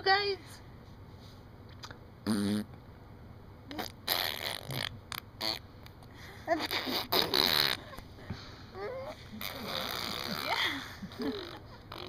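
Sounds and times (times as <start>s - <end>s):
baby blowing raspberries: 3.7s - 5.6s, 6.6s - 8.0s, 8.8s - 12.0s.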